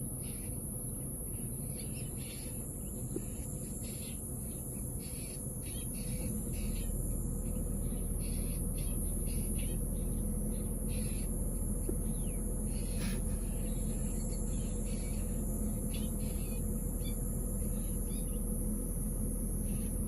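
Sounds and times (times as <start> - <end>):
insects chirping: 0.0 - 20.0
low rumble: 6.0 - 20.0.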